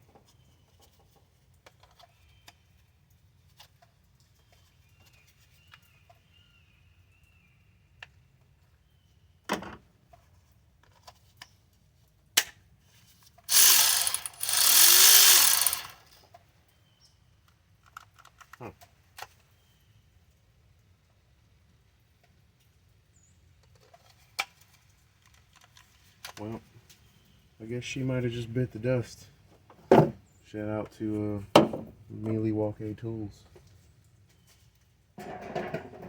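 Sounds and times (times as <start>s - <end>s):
cordless ratchet motor spurts: 13.5s - 16.2s.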